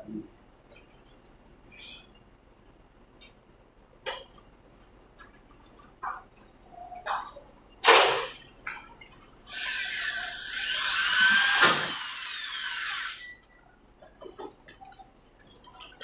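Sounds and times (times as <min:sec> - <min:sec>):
power drill running: 0:09.5 - 0:13.4.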